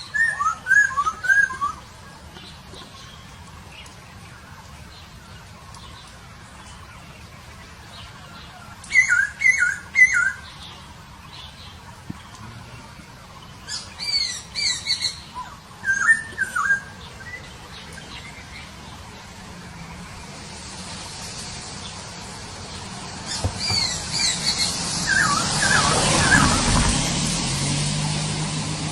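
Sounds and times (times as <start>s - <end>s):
bird whistling calls: 0.0s - 1.8s, 8.9s - 10.4s, 13.7s - 17.5s, 23.3s - 26.9s
faint hiss: 0.0s - 28.9s.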